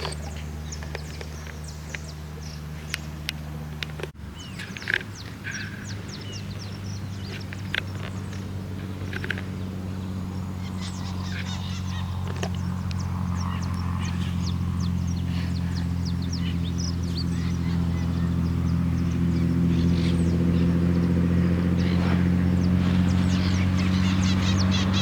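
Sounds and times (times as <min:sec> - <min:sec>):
propeller plane engine droning: 0:00.0 - 0:25.0
bird chirps: 0:04.4 - 0:08.5, 0:09.2 - 0:25.0.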